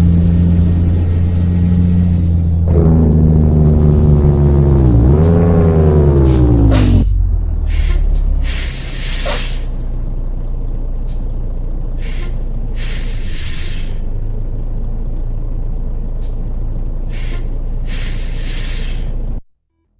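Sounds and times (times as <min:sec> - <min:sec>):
diesel truck engine idling: 0:00.0 - 0:19.4
air hiss bursts: 0:06.2 - 0:09.9.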